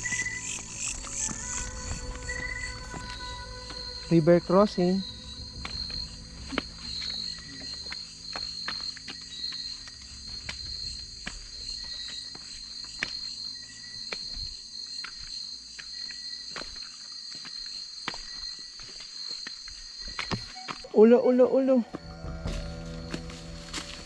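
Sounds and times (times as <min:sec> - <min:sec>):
low rumble: 0:00.0 - 0:12.8, 0:21.9 - 0:24.0
crickets and insects chirring: 0:00.0 - 0:24.0.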